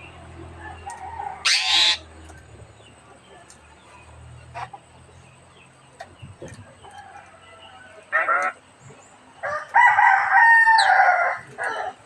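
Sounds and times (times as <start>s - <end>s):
bird harsh calls: 1.4s - 2.1s.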